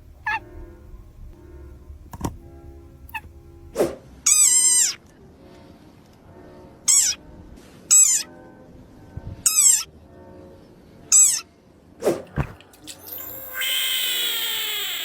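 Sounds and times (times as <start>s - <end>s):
frog calls: 0.2s - 0.5s, 13.1s - 15.0s.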